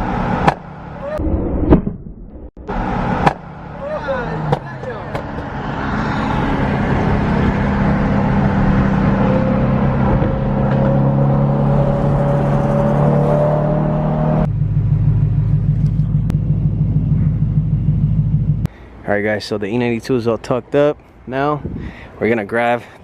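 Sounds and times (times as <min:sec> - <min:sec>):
rising whine: 0:00.0 - 0:18.7
car engine drone: 0:00.0 - 0:19.0.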